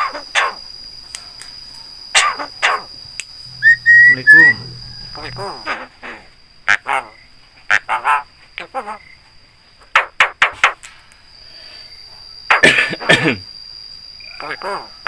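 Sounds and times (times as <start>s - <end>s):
myna bird calling: 3.5s - 9.0s
bird mimicking a cough: 12.5s - 13.4s.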